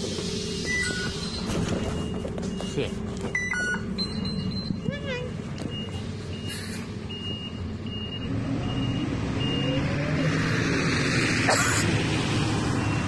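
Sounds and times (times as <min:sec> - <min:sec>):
bus engine pulling away: 0:00.0 - 0:13.0
high warning beep: 0:00.7 - 0:05.1.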